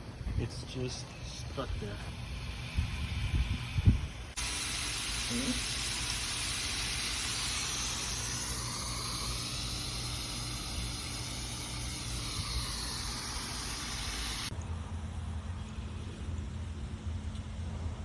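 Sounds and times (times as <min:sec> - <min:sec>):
sprinkler spraying water hiss: 0:00.5 - 0:14.5.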